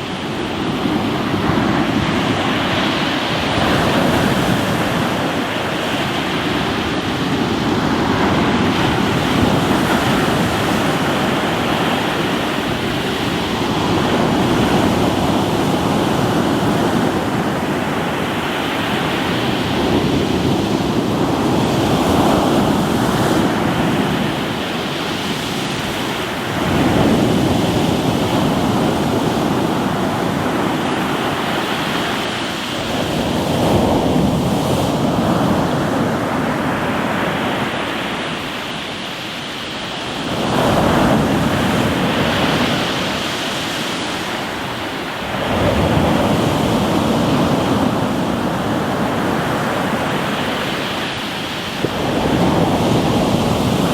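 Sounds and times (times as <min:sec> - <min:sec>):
ocean surf on rocky shore: 0:00.0 - 0:53.9.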